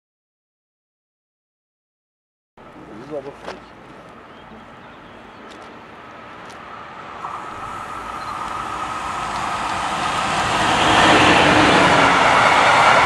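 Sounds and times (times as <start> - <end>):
train approaching: 2.6 - 13.0.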